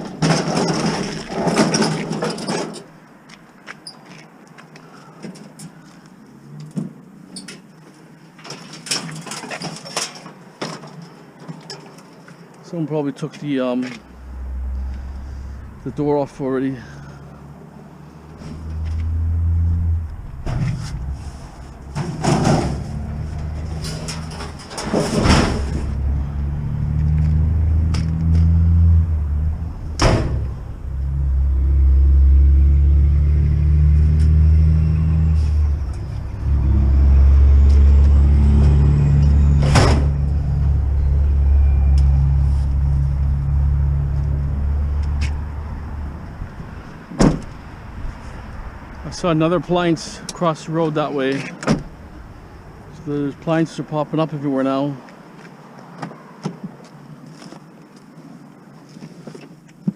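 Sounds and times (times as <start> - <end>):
sharp knocks and rattles: 0.0 - 2.9, 21.8 - 26.0
van engine and road noise: 0.0 - 59.9.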